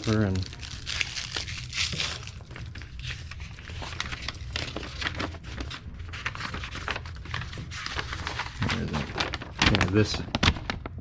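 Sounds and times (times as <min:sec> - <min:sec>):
crinkling rustling handling: 0:00.0 - 0:11.0
low steady hum: 0:00.0 - 0:11.0.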